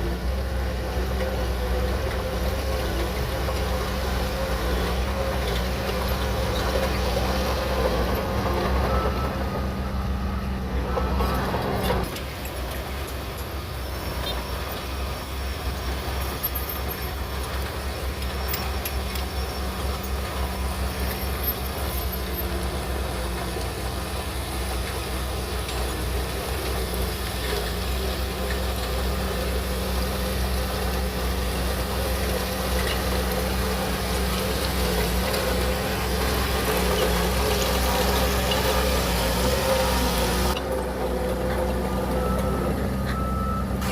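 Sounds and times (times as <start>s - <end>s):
bulldozer diesel engine rumbling: 0.0s - 43.9s.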